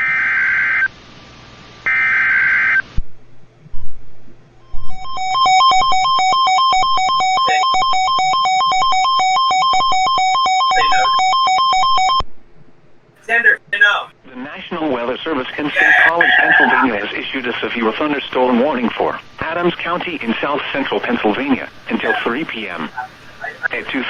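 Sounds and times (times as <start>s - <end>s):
harsh two-tone alert signal: 5.0s - 12.1s
digital data screech: 10.8s - 11.2s.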